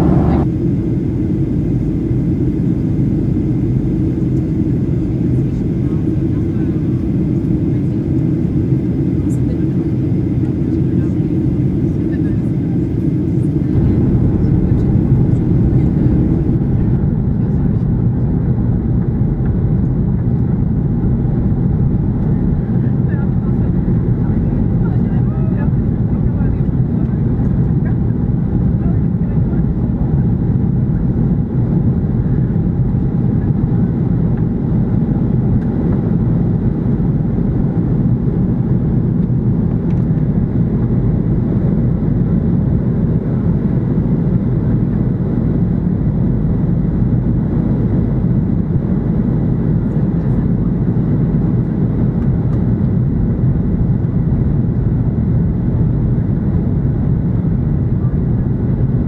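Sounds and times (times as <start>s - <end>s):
rushing air: 0.0s - 3.3s, 12.8s - 17.0s
jet engine rumble in cabin: 0.0s - 59.0s.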